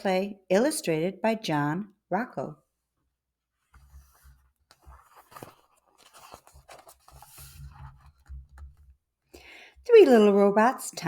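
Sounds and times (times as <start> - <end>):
picture book pages turning: 3.6 - 9.0.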